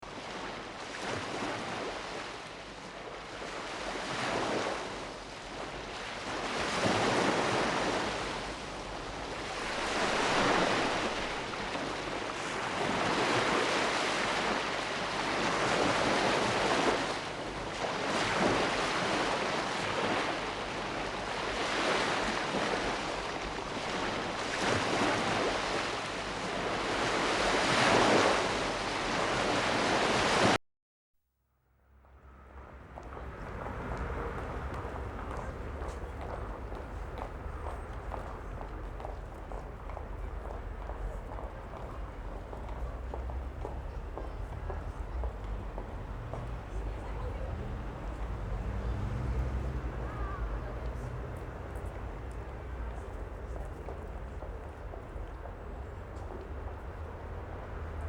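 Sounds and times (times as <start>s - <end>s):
sea waves breaking on shore: 9.2s - 26.0s, 32.4s - 58.0s.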